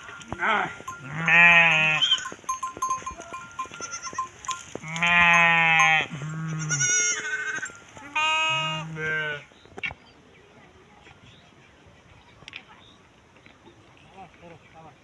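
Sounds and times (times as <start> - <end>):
sheep or goats bleating: 0.0 - 9.4.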